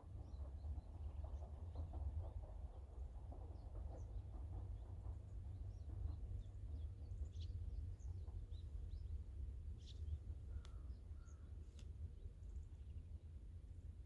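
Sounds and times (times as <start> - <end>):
small birds chirping: 5.6 - 13.0
faint ticks: 10.5 - 10.8, 11.7 - 12.0.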